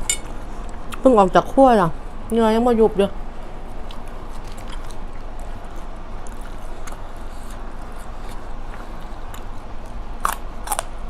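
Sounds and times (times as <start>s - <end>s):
steady low hum: 0.0s - 11.0s
chewing with mouth clicks: 3.7s - 11.0s.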